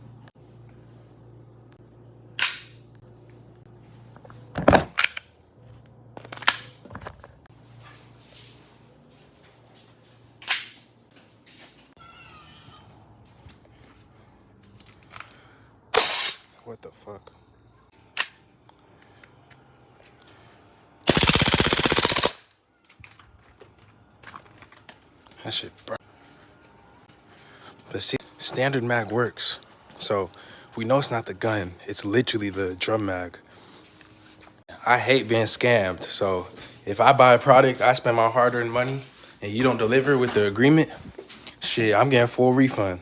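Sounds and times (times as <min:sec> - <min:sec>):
airsoft pistol shots: 0:16.0 - 0:16.4, 0:21.1 - 0:22.4.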